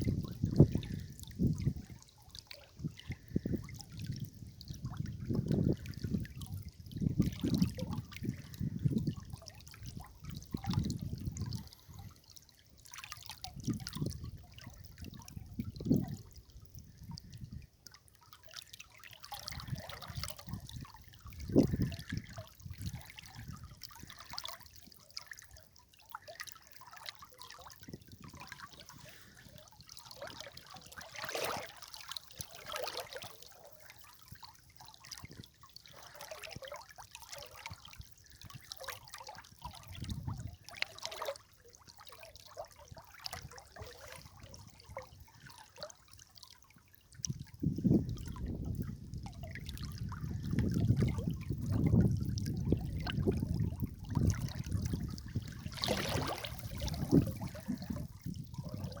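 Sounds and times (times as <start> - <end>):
river water trickling and splashing: 0.0 - 59.0.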